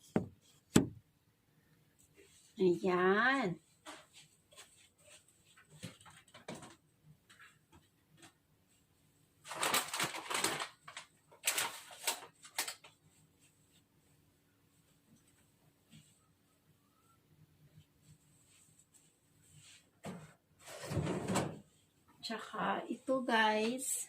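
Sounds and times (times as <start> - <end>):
fabric rustling: 3.6 - 6.4.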